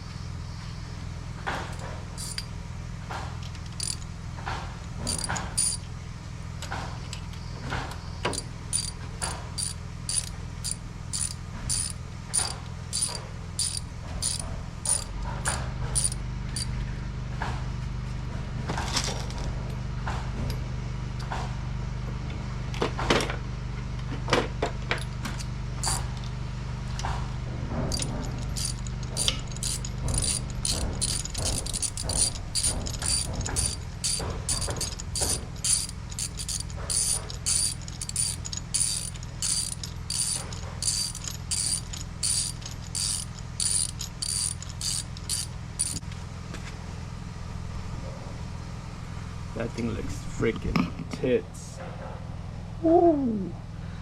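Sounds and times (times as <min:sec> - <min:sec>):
steady low hum: 0:00.0 - 0:23.0, 0:24.8 - 0:54.0
ratchet wrench clicking: 0:01.7 - 0:02.5, 0:03.5 - 0:04.1, 0:05.0 - 0:05.9, 0:08.3 - 0:16.7, 0:25.8 - 0:26.1, 0:27.9 - 0:46.0.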